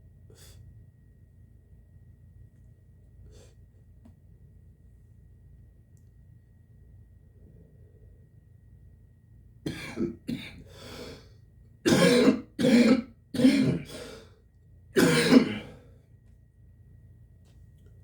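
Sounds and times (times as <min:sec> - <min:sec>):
man clearing throat: 0:09.7 - 0:10.6, 0:11.9 - 0:14.0, 0:15.0 - 0:15.8
man coughing: 0:09.7 - 0:10.6, 0:11.9 - 0:14.1, 0:15.0 - 0:15.8.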